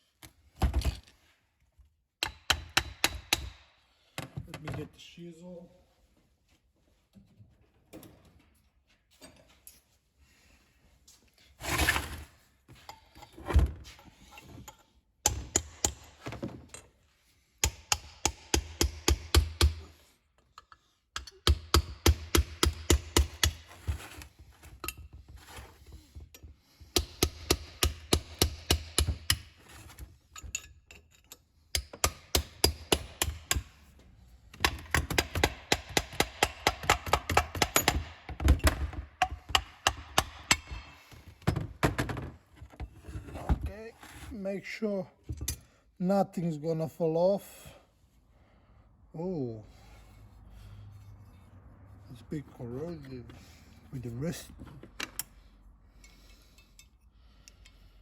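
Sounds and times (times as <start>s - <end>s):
hammer striking steel chisel: 2.2s - 3.8s, 15.2s - 16.2s, 17.6s - 19.9s, 21.2s - 23.8s, 26.9s - 29.6s, 31.7s - 33.8s, 34.6s - 41.0s.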